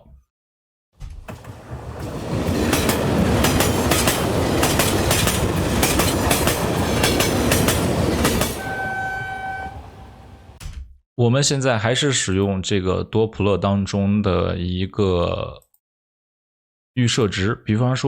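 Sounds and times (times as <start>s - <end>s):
train rumble: 1.3s - 10.6s
wheels clacking on rails: 1.3s - 10.6s.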